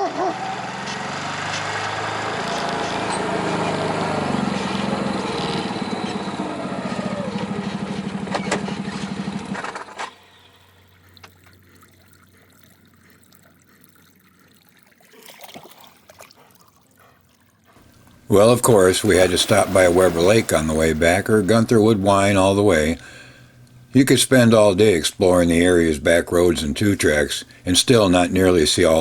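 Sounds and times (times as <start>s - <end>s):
vehicle engine pulsing: 0.0s - 10.0s, 17.8s - 29.0s.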